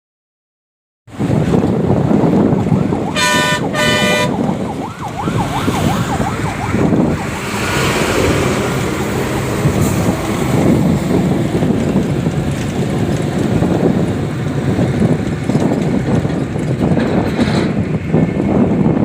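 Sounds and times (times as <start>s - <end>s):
highway traffic: 1.1s - 19.0s
warbling siren-like tone: 2.6s - 10.4s
vehicle horn blaring: 3.1s - 4.6s.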